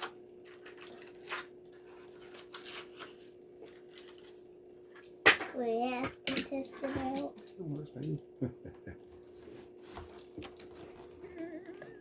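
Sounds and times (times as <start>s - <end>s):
cardboard and paper tearing: 0.7s - 3.2s.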